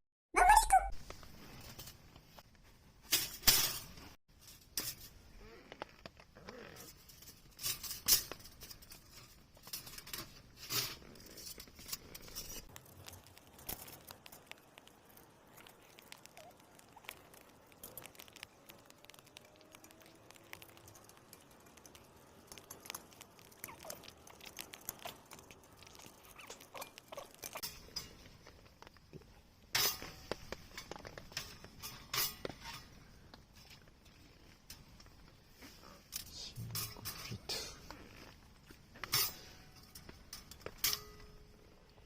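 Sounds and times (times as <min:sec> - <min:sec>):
rain dripping on a tarp: 0:12.4 - 0:27.7.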